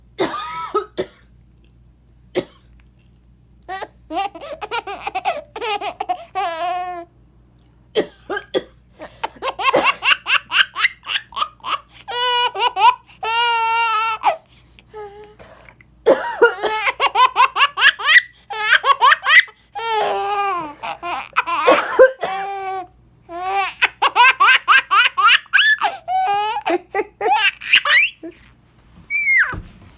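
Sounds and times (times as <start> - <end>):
woman coughing: 0.2 - 1.3, 8.0 - 8.8, 16.1 - 16.9, 21.6 - 22.6
baby laughing: 3.7 - 7.0, 9.2 - 14.4, 16.4 - 28.5.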